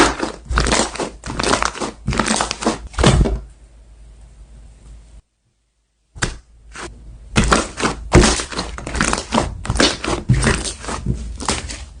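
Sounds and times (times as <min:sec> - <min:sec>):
slime squishing and popping: 0:00.0 - 0:03.2, 0:07.4 - 0:11.9.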